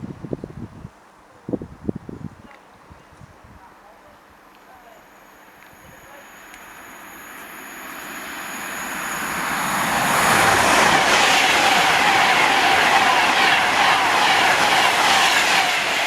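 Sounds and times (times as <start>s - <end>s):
electric train passing: 4.2s - 16.0s.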